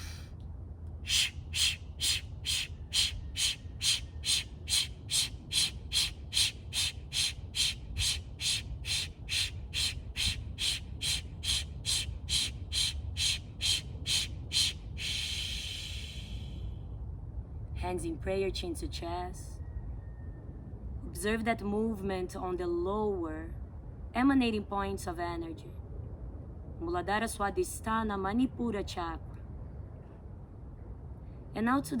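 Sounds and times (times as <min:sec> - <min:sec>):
sharp forceful exhalations: 0:00.0 - 0:00.3, 0:13.7 - 0:16.7
long breath: 0:15.0 - 0:16.8.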